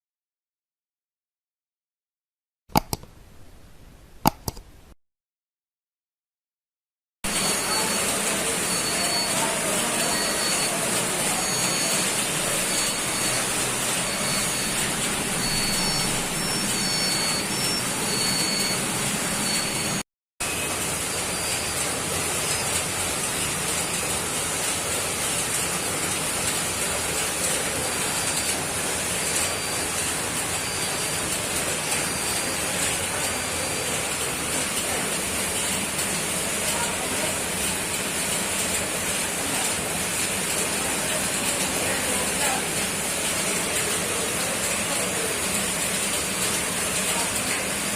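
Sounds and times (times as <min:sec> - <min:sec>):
air conditioner blower rushing: 0:07.3 - 0:47.9
faint high-pitched peeps: 0:07.4 - 0:20.0.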